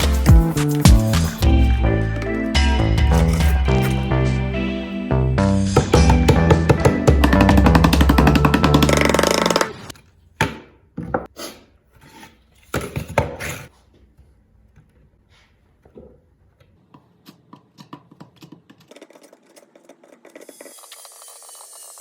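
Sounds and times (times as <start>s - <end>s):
wooden pieces knocking: 5.7s - 9.9s.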